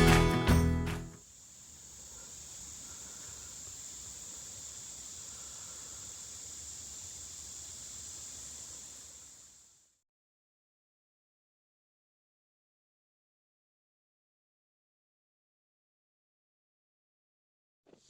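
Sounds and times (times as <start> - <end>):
background music: 0.0 - 1.2
light outdoor hiss: 1.0 - 10.0
high-pitched insect trill: 1.2 - 10.0.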